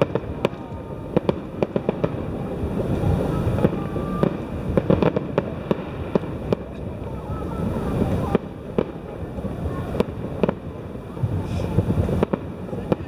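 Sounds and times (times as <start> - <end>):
fireworks bangs and crackles: 0.0 - 13.0
low rumble of bursts: 0.0 - 13.0.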